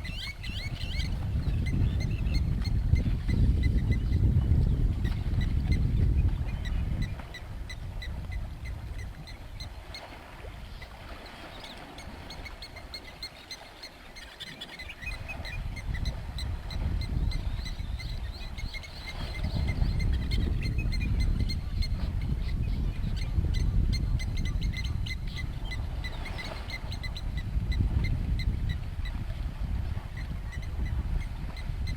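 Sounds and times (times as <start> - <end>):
birds chirping: 0.0 - 4.2.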